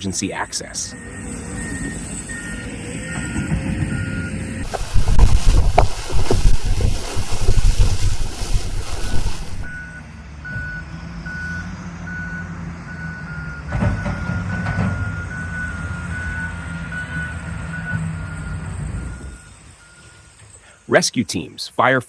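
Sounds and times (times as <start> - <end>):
heavy vehicle engine hum: 0.0 - 20.9
vehicle reversing alarm beeping: 0.0 - 21.0
rush of loud noise: 4.6 - 9.8.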